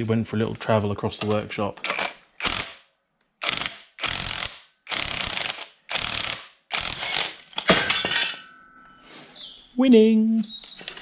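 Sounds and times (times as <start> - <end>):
ratchet wrench clicking: 3.4 - 7.4.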